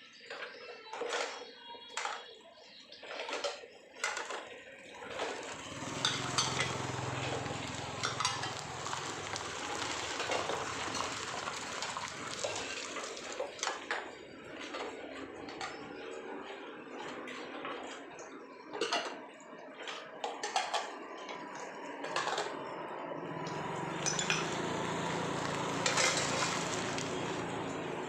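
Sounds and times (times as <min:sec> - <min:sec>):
rushing water noise: 0:05.3 - 0:14.3, 0:23.3 - 0:28.0.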